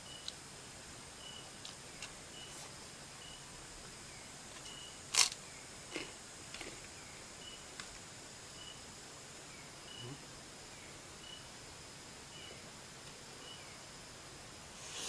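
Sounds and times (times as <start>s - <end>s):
faint high chirp: 4.1s - 5.6s, 7.4s - 7.7s, 8.6s - 8.9s, 13.4s - 13.8s.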